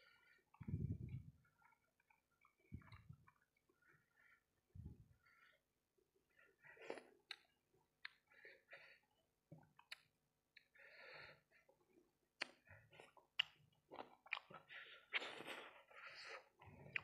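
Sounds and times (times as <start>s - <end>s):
chewing mouth clicks and smacks: 1.4s - 3.8s, 6.9s - 8.3s, 9.6s - 10.7s, 12.4s - 15.4s.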